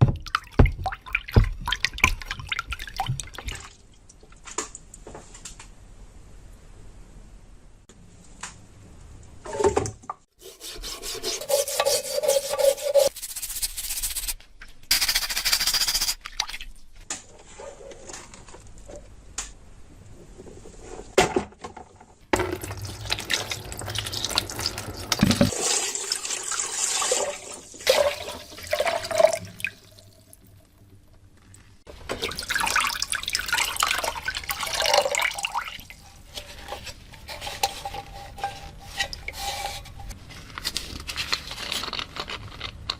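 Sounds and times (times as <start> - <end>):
rubbing and handling noises: 10.4 - 16.2, 35.9 - 42.9
water running and splashing: 22.4 - 30.4.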